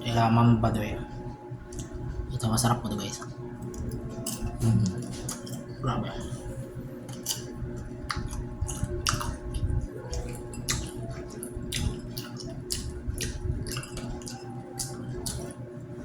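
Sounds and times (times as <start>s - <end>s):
steady low hum: 0.0s - 16.0s
person chewing wetly: 7.1s - 15.6s.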